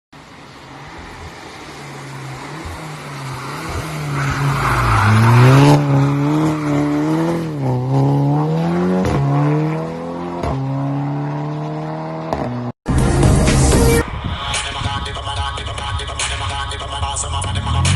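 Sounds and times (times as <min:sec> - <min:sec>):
car engine revving: 0:00.2 - 0:13.0.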